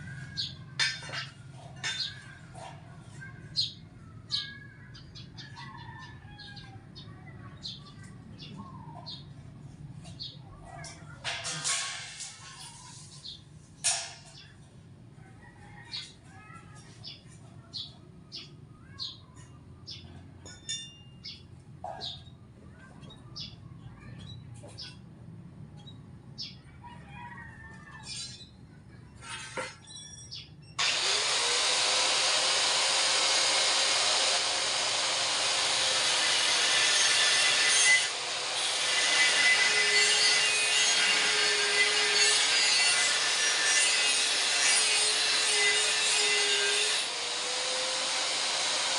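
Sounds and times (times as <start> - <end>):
power tool whining and grinding: 30.8 - 48.9.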